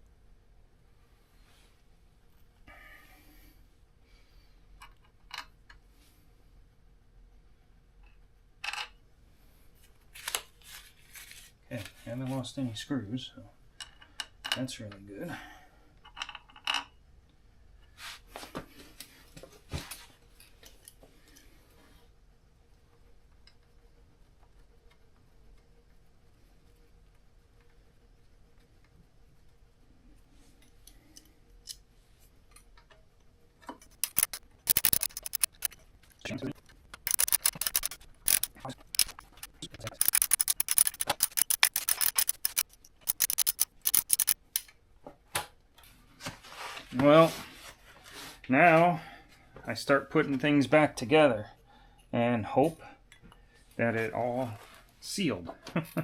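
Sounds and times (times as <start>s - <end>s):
hand tools and metal parts clattering: 33.6s - 44.4s
rapid sharp clicking: 33.8s - 35.8s, 36.5s - 44.4s.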